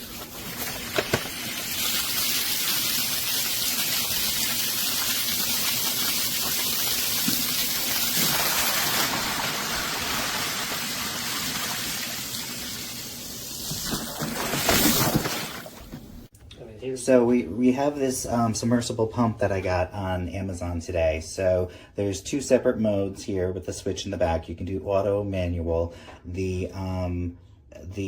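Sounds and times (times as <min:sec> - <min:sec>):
water gushing from pump hose: 0:00.0 - 0:15.8.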